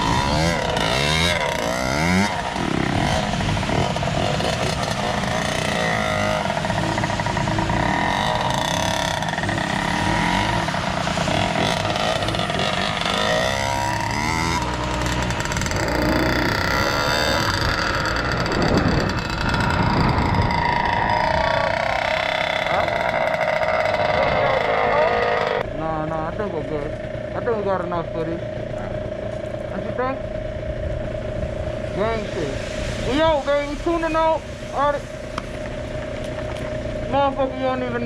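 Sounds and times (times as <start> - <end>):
dirt bike engine revving: 0.0 - 38.0.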